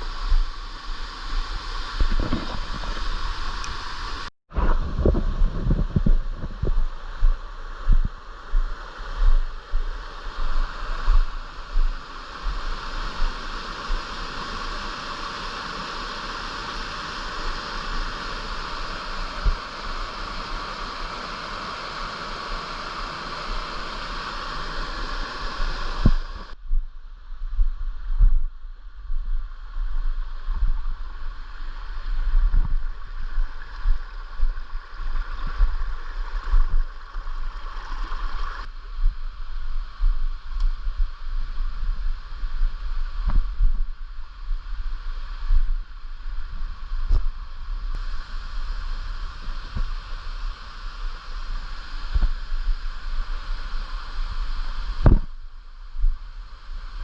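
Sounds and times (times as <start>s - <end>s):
rushing stream water: 0.0s - 4.7s, 6.2s - 26.6s, 29.7s - 38.8s, 46.2s - 57.0s
wind buffeting microphone: 1.8s - 12.6s.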